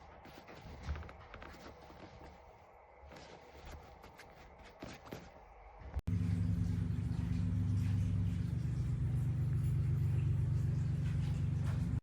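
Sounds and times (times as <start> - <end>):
vibration unit buzzing: 6.1 - 12.0.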